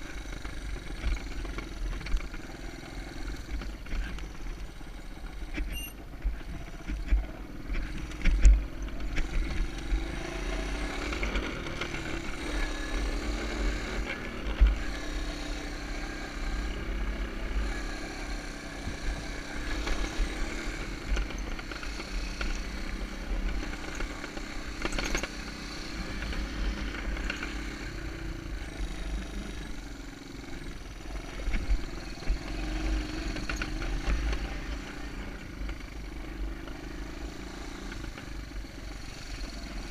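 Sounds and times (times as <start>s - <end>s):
small engine revving: 0.0s - 39.9s.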